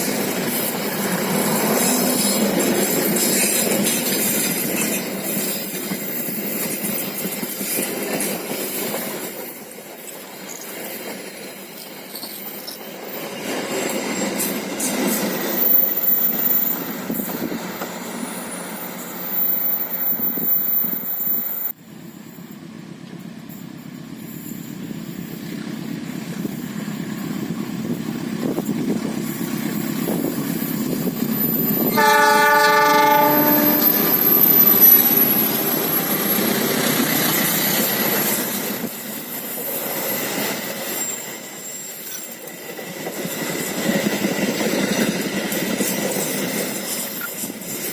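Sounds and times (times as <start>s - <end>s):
train approaching: 0.0s - 47.9s
trains passing on rails: 0.0s - 47.9s
locomotive air horn: 31.9s - 34.5s.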